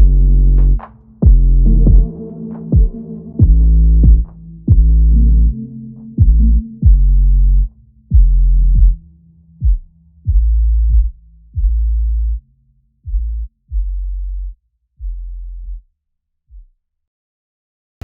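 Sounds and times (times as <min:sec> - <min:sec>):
deep electronic bass drum: 0:00.0 - 0:09.0, 0:09.6 - 0:12.4, 0:13.1 - 0:14.1.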